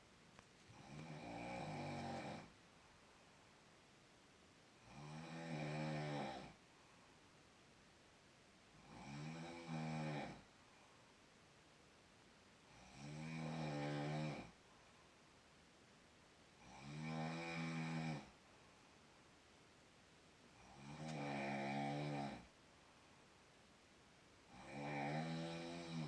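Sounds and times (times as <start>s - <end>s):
person snoring: 0.7s - 2.5s, 4.8s - 6.6s, 8.8s - 10.4s, 12.8s - 14.5s, 16.6s - 18.3s, 20.6s - 22.5s, 24.5s - 26.0s.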